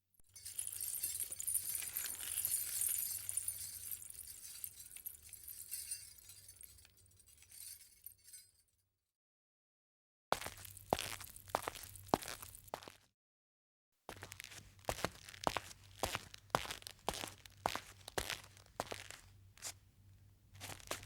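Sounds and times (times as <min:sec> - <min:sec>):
footsteps crunching on broken glass: 0:00.4 - 0:08.2, 0:10.4 - 0:13.0, 0:14.1 - 0:19.2.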